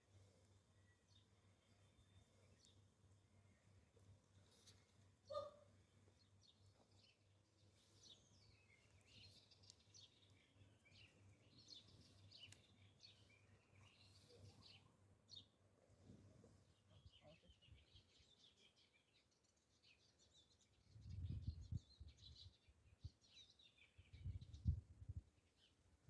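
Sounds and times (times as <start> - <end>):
small birds chirping: 0.1 - 15.7, 16.6 - 25.8.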